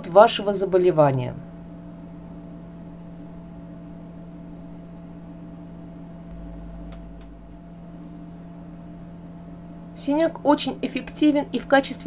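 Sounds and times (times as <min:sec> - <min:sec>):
steady background hum: 0:00.0 - 0:12.0
low tones: 0:05.9 - 0:09.9.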